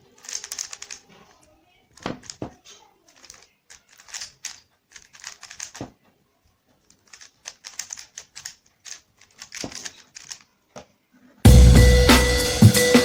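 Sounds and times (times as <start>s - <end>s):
puzzle cube clicking: 0.0s - 6.0s, 6.8s - 10.5s.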